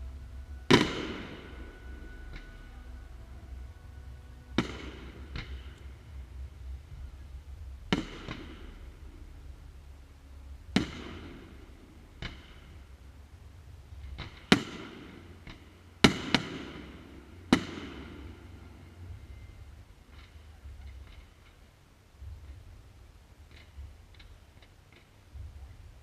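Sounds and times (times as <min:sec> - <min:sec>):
fireworks bangs: 0:00.0 - 0:09.6, 0:10.7 - 0:13.1, 0:13.9 - 0:21.6.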